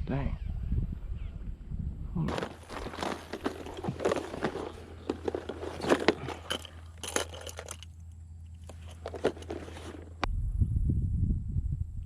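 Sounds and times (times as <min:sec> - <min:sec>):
small clicks and clinks: 0:03.3 - 0:10.1.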